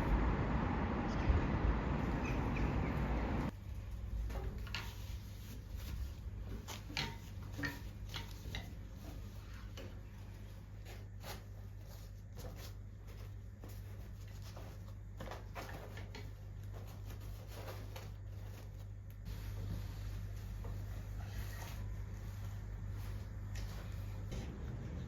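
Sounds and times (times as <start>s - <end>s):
low hum: 0.0s - 4.2s.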